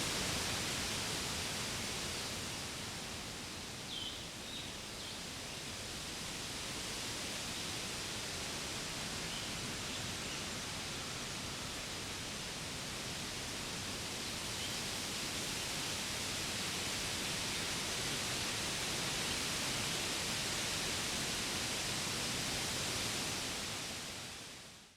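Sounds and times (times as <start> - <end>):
wind blowing through trees: 0.0 - 24.9.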